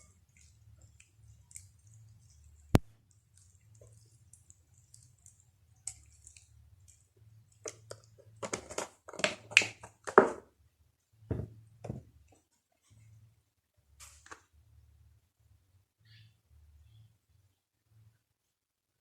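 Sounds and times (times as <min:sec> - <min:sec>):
crackly wet chewing and smacking: 0:00.0 - 0:10.2.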